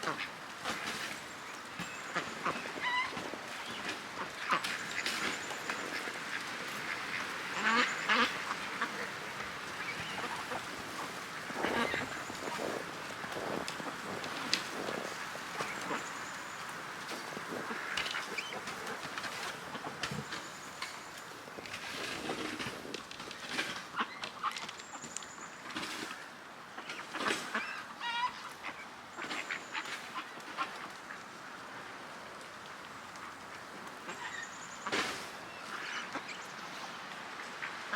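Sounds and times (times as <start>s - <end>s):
ducks quacking: 0.0s - 1.1s, 1.8s - 21.2s.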